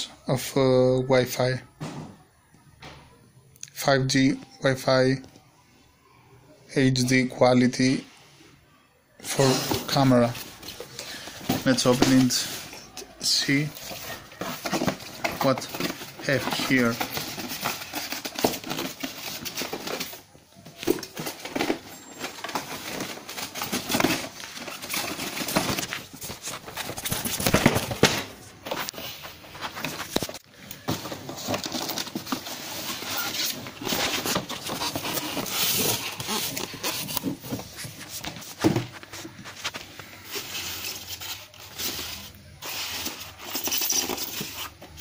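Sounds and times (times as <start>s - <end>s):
packaging rustling and crinkling: 9.4s - 45.0s.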